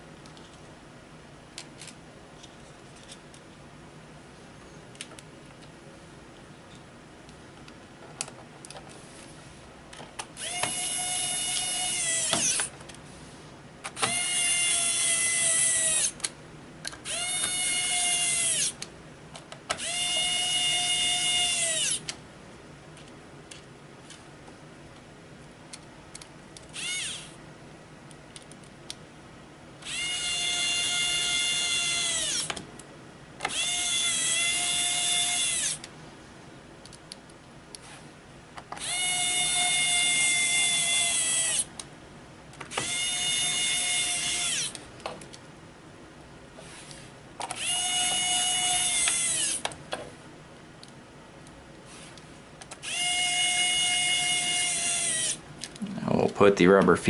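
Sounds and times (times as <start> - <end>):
electric screwdriver whine: 10.4 - 12.7, 14.0 - 16.2, 17.1 - 18.8, 19.8 - 22.0, 26.7 - 27.4, 29.8 - 32.6, 33.4 - 35.8, 38.8 - 41.7, 42.7 - 44.8, 47.6 - 49.7, 52.8 - 55.4.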